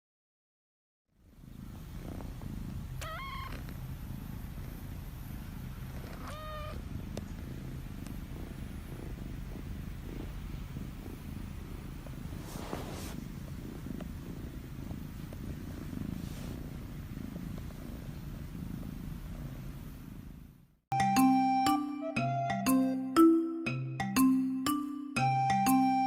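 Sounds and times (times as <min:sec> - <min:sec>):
kitten purring: 0:01.2 - 0:20.8
high kitten meows: 0:06.2 - 0:06.8.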